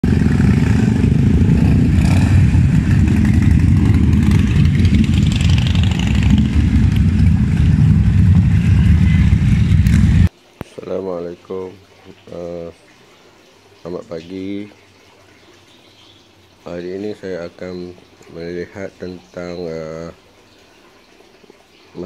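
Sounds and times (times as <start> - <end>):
motorcycle engine running: 0.0 - 10.3.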